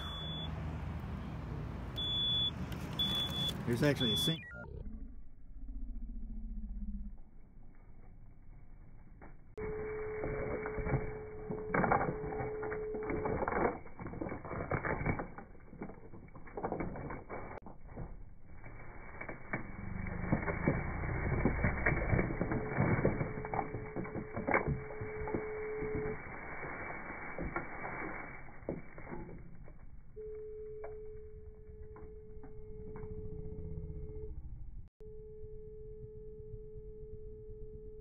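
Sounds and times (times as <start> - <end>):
metal and wood clattering: 19.2 - 29.9.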